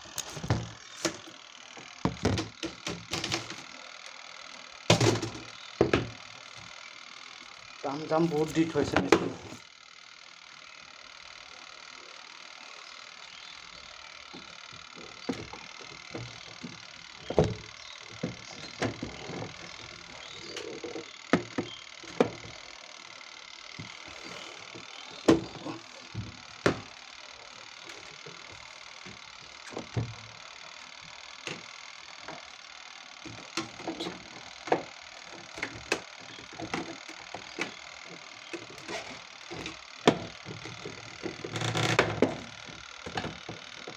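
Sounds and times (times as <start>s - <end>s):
tools clicking and knocking on plastic: 0.1s - 4.1s, 4.9s - 6.7s, 8.4s - 9.6s, 14.3s - 22.6s, 23.8s - 27.0s, 27.7s - 30.4s, 31.3s - 32.5s, 33.2s - 43.9s.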